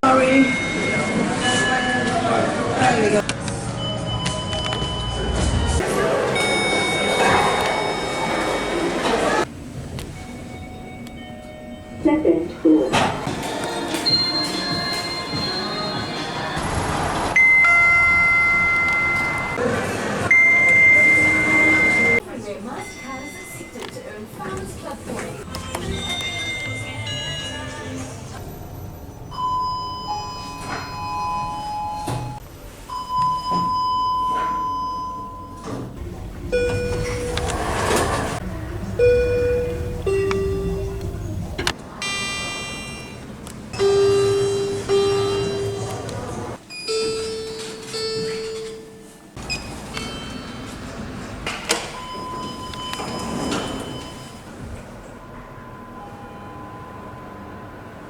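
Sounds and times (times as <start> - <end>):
elevator chimes and beeps: 0.0 - 2.1, 3.7 - 19.6, 20.3 - 24.5, 25.5 - 28.0, 29.2 - 54.6, 55.2 - 58.0
elevator door whoosh: 13.0 - 22.2, 35.6 - 41.8, 49.4 - 54.6.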